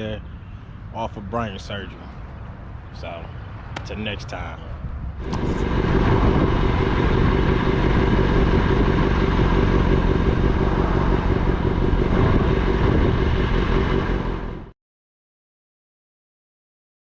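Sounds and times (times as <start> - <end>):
vehicle engine running: 5.2 - 14.7.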